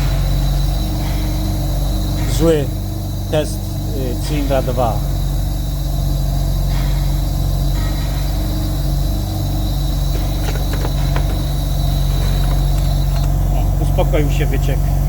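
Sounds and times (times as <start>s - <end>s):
compressed air hissing: 0.0s - 14.0s
low hum: 0.0s - 15.0s.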